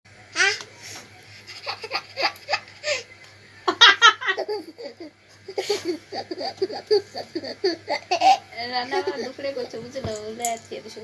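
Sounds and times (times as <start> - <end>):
baby laughing: 1.4 - 3.0, 3.8 - 9.3.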